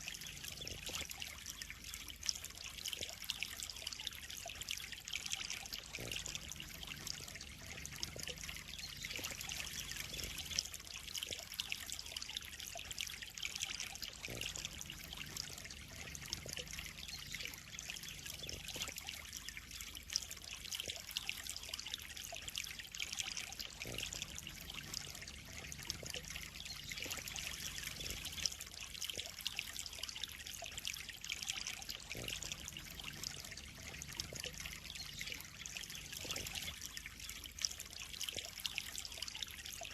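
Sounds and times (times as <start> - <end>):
water pouring into pond: 0.0 - 39.9.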